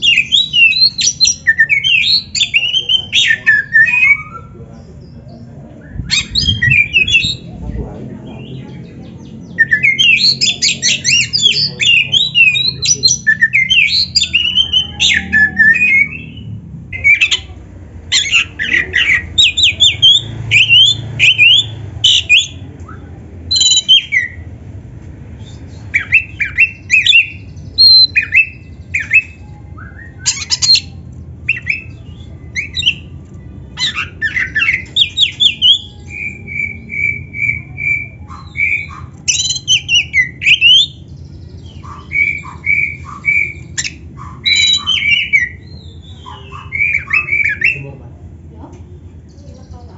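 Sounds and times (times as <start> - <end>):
bird singing whistled phrases: 9.5 - 17.4, 18.1 - 24.4, 25.8 - 33.1, 33.7 - 47.9.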